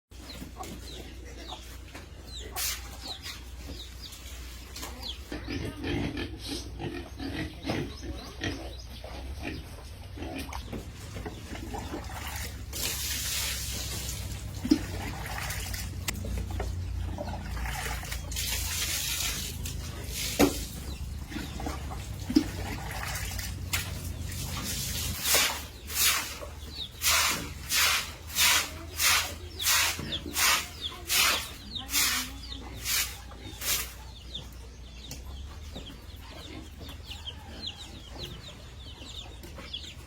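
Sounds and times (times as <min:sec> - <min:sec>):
pigs grunting: 0:05.2 - 0:12.7, 0:20.8 - 0:26.2.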